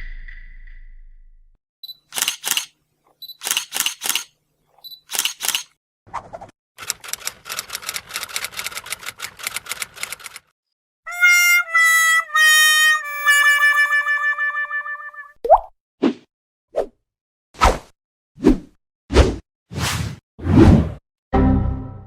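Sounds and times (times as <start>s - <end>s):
autofocus beep: 1.8s - 2.1s, 3.2s - 3.6s, 4.8s - 5.1s
camera shutter clicks: 2.1s - 2.8s, 3.4s - 4.3s, 5.0s - 5.7s.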